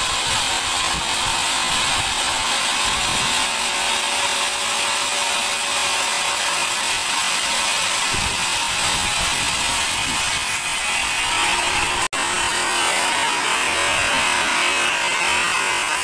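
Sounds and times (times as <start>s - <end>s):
band saw cutting through log: 0.0s - 16.0s.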